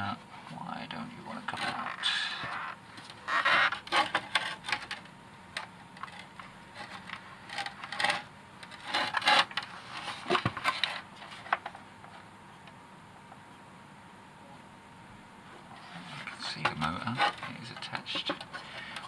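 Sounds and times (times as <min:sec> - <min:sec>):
plastic parts clicking and rattling: 0:03.0 - 0:11.8, 0:16.6 - 0:19.0.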